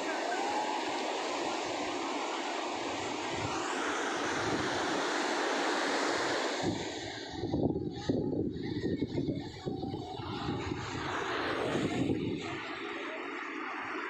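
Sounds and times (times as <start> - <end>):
sea waves rushing: 0.0 - 14.0
wind buffeting the microphone: 6.2 - 12.8.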